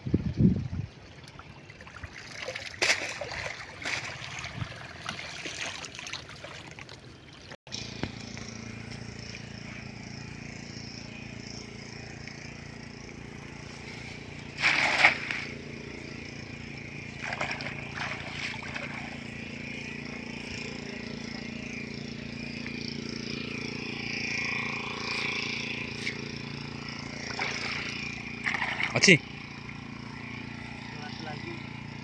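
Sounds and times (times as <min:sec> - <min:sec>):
water splashing and sloshing: 0:00.8 - 0:07.6, 0:13.3 - 0:20.6, 0:27.0 - 0:29.8.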